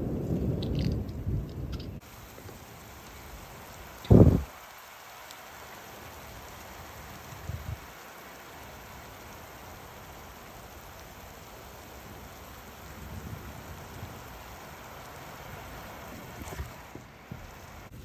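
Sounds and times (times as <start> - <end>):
steady rain: 0.0 - 18.0
low thumps: 4.1 - 4.5.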